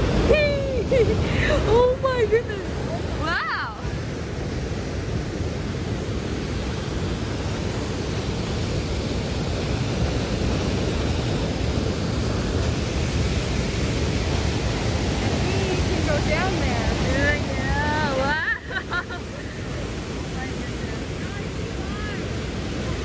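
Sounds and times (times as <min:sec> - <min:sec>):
waterfall roaring: 0:00.0 - 0:23.0.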